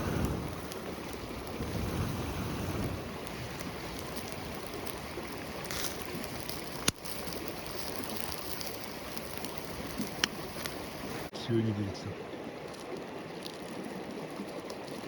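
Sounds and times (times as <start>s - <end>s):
campfire crackling: 0.0s - 15.0s
sharp pop of fire: 6.8s - 7.2s.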